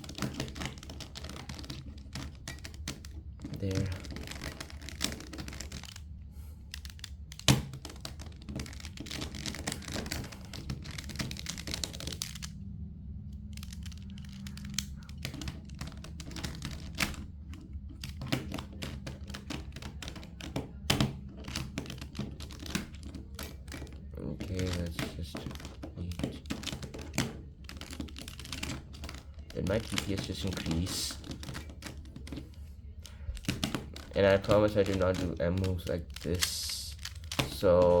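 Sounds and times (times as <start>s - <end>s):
puzzle cube clicking: 0.0s - 38.0s.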